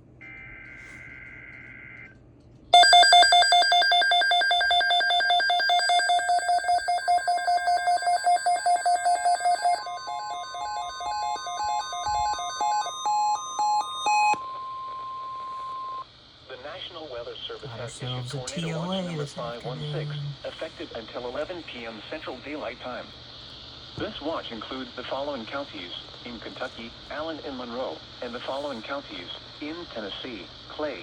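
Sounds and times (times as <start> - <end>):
electronic alarm beeping: 2.8 - 16.0
steady warning tone: 2.8 - 16.0.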